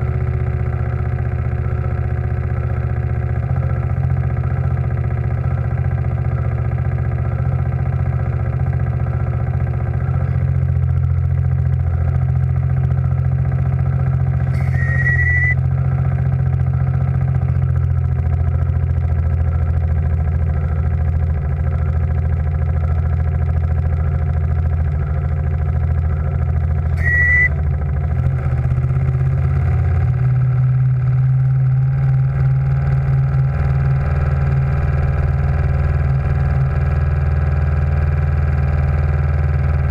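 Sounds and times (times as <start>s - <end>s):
steam engine low hum: 9.9s - 36.8s, 39.1s - 39.9s
short high whistle: 14.5s - 15.6s, 27.0s - 27.6s.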